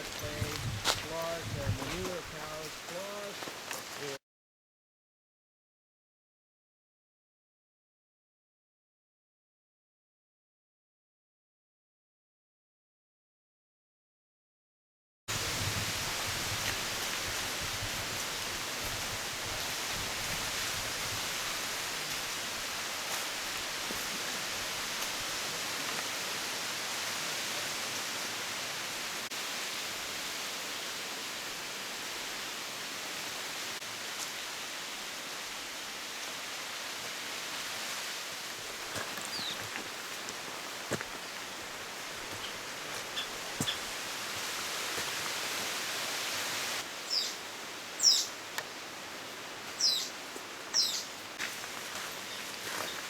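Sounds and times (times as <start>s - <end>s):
outdoor ambience hiss: 0.0s - 4.2s, 15.3s - 53.0s.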